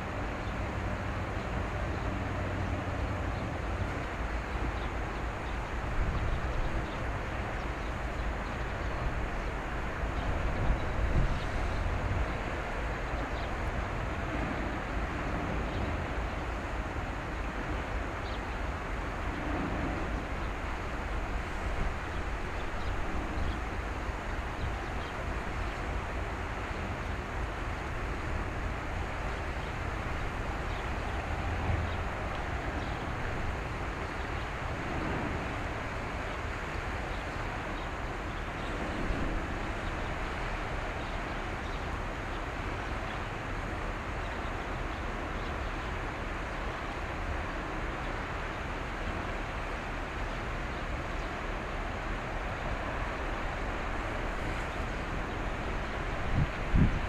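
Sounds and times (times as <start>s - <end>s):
wind on microphone: 5.6s - 18.1s, 18.7s - 41.3s, 52.5s - 57.0s.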